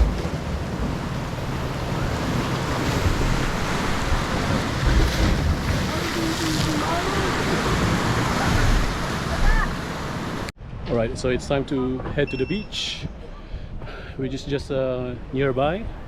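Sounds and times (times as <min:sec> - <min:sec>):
sea waves washing on shore: 0:00.0 - 0:10.6
wind buffeting microphone: 0:00.0 - 0:11.5.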